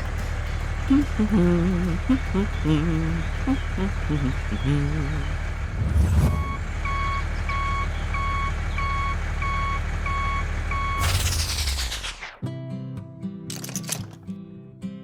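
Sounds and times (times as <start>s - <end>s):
low engine rumble: 0.0s - 12.3s
loud rushing whoosh: 5.6s - 6.6s
reversing alarm beeps: 6.2s - 11.2s.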